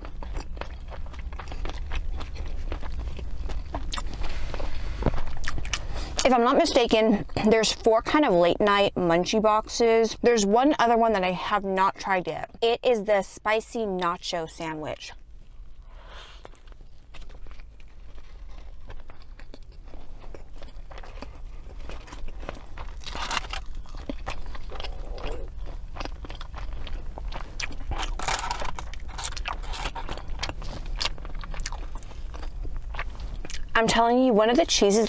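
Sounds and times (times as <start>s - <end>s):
crunchy biting and chewing: 0.0s - 6.3s, 15.5s - 33.8s.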